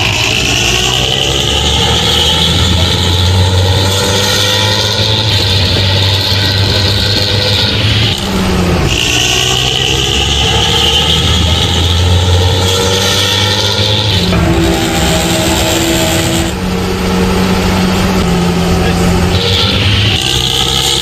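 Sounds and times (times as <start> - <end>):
engine rumbling through exhaust: 0.0 - 21.0.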